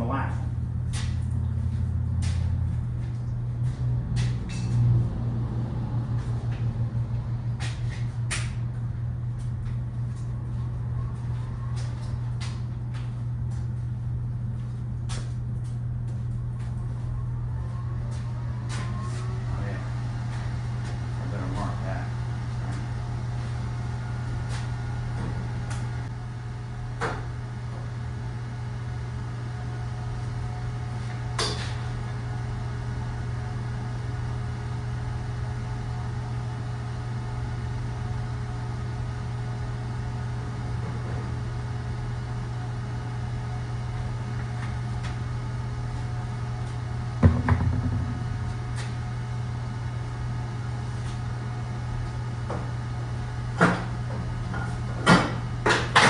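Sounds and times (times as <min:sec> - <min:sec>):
low hum: 0:47.0 - 0:51.8
tools knocking on workbench: 0:47.2 - 0:48.3.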